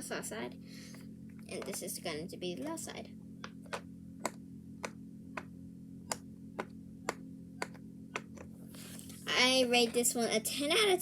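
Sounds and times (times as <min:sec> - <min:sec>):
pop-it toy popping: 0:03.4 - 0:05.5, 0:06.1 - 0:08.5.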